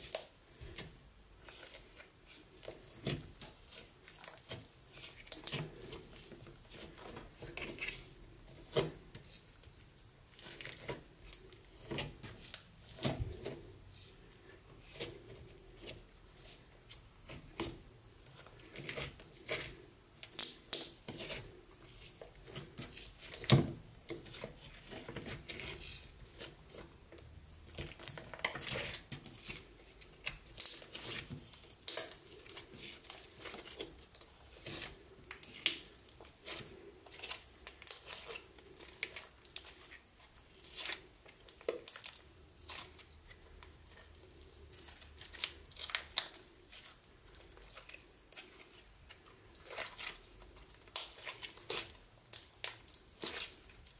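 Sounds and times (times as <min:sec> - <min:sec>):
slime crackling and popping: 0:02.6 - 0:08.0, 0:18.5 - 0:21.3, 0:22.5 - 0:40.0, 0:40.6 - 0:53.9.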